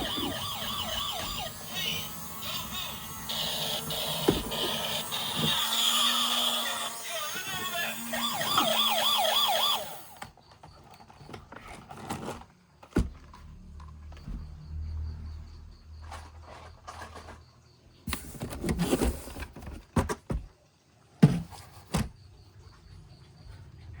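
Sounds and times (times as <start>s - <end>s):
toy electronic siren warbling: 0.0s - 10.2s.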